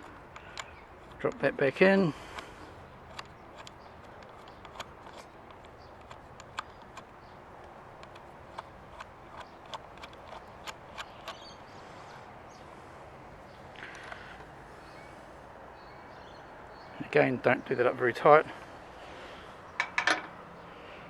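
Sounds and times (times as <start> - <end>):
metal parts and tools clicking: 0.0 - 11.5, 19.8 - 20.4.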